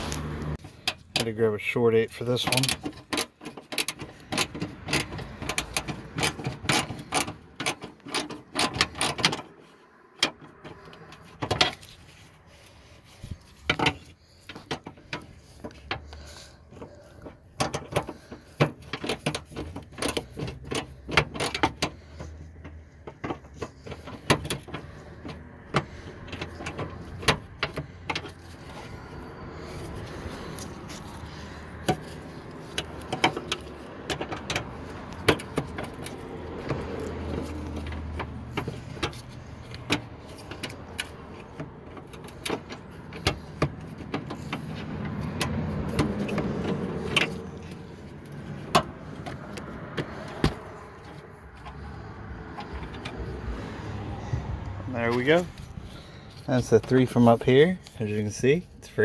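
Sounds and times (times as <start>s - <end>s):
tools knocking and clicking: 2.4s - 12.6s, 13.2s - 53.8s
socket ratchet clicking: 17.0s - 53.5s.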